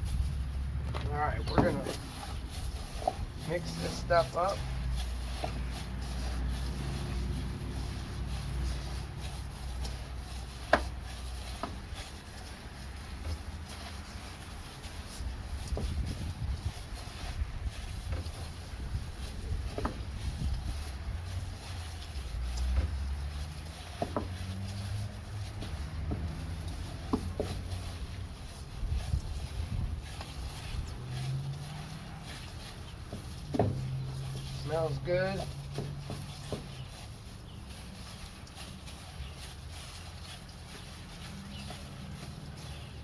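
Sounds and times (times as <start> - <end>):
low steady rumble: 0.0 - 13.4
hands mixing wet meat in bowl: 0.0 - 43.0.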